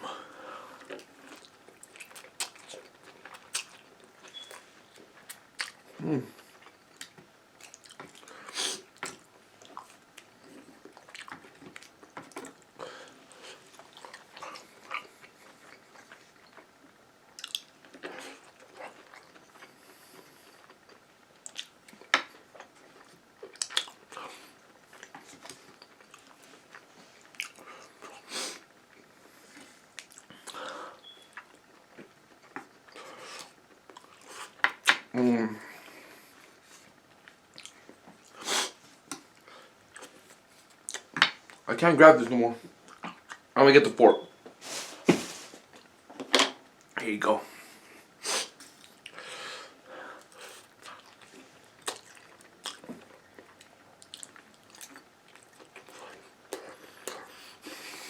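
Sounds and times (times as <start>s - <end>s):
person chewing food: 0.0s - 35.0s, 35.7s - 41.6s, 42.8s - 43.5s, 48.6s - 58.0s
wet mouth clicks and crunches: 1.0s - 4.4s, 17.4s - 18.2s, 23.5s - 24.0s, 50.2s - 57.2s.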